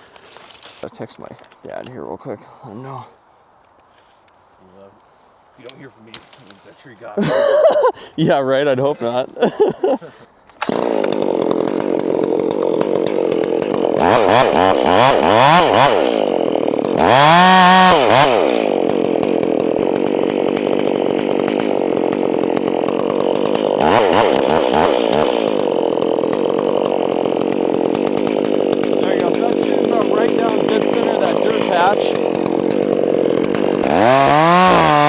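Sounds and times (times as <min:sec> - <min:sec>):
chainsaw engine revving: 0:10.6 - 0:35.0.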